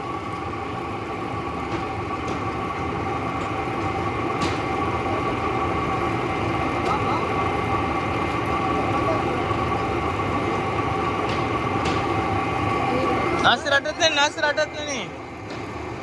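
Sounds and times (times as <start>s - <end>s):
veneer peeling machine drone: 0.0s - 16.0s.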